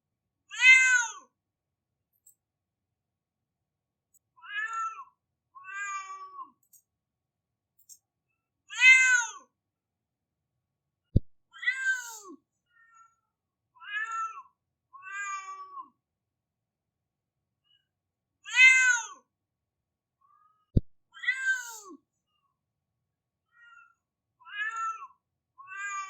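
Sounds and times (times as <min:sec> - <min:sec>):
cat meowing: 0:00.5 - 0:01.2, 0:04.4 - 0:06.5, 0:08.7 - 0:09.4, 0:13.8 - 0:14.4, 0:15.0 - 0:15.7, 0:18.5 - 0:19.1, 0:23.6 - 0:25.1.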